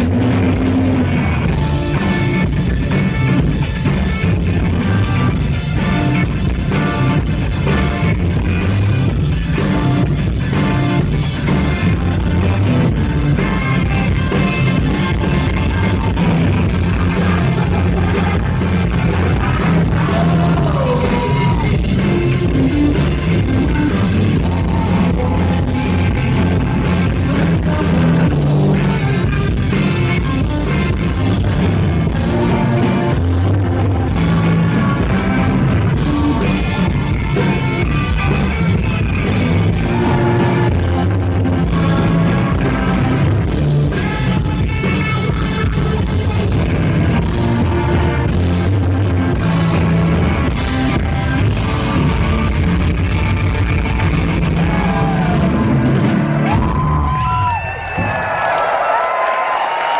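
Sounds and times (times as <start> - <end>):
live rock band playing: 0.0 - 59.9
person singing: 15.0 - 29.3.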